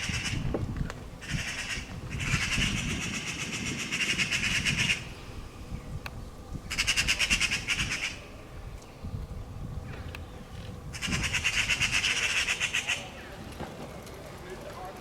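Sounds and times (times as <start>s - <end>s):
magpies rattling alarm chatter: 0.0s - 0.5s, 1.2s - 9.1s, 10.2s - 13.5s.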